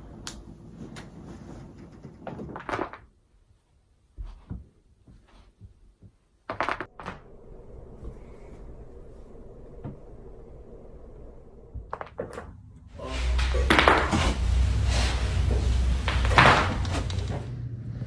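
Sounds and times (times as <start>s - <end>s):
spinal joints cracking: 0.3s - 3.2s.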